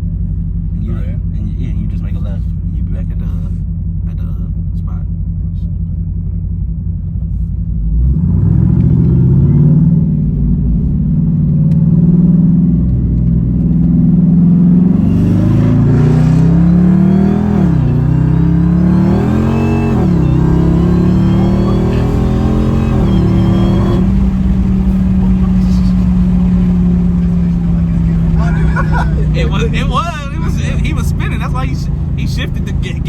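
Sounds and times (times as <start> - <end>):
car engine accelerating hard: 0.0 - 33.0.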